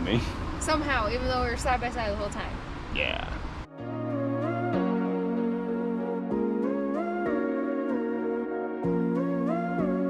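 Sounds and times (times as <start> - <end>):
soft slow background music: 3.7 - 10.0.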